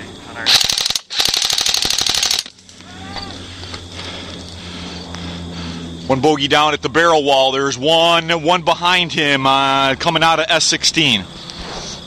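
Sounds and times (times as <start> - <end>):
airsoft gun firing: 0.5 - 2.5.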